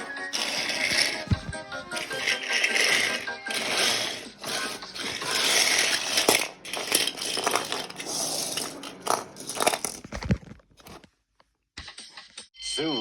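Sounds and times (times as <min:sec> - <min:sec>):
train crashing and clattering: 0:00.3 - 0:10.2.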